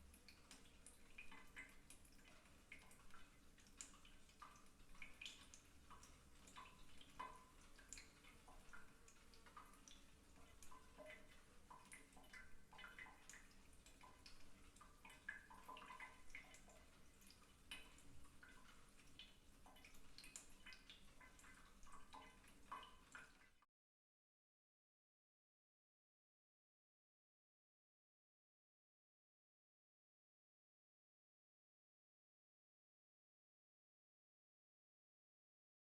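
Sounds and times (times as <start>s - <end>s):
water drops plinking in bathtub: 0.0s - 23.6s.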